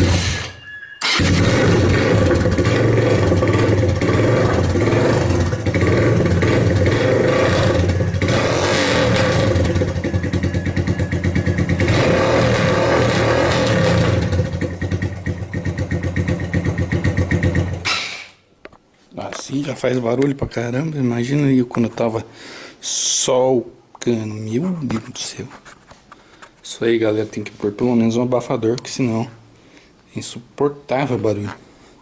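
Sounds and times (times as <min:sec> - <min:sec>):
loud motorcycle engine revving: 0:00.0 - 0:17.9.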